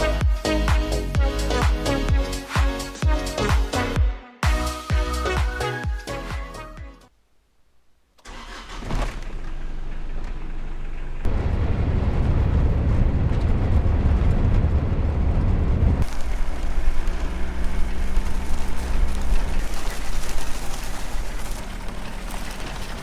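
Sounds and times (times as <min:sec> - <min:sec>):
heavy low rumble: 0:00.0 - 0:06.4, 0:09.5 - 0:23.0
vehicle engine hum: 0:09.2 - 0:23.0.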